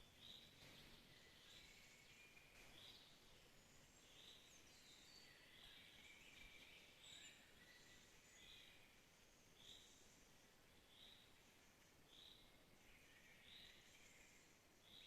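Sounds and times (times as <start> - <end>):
soft hiss: 0.0 - 15.0.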